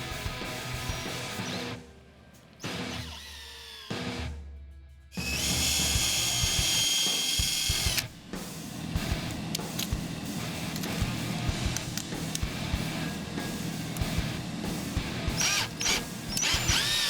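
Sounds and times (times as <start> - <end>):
background music: 0.0 - 17.0
power drill running at high speed: 2.8 - 4.0, 5.2 - 8.1, 15.3 - 17.0.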